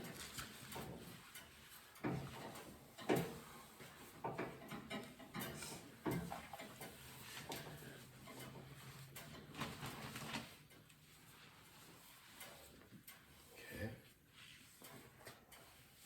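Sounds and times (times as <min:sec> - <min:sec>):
cloth rubbing on metal panel: 0:05.5 - 0:16.0.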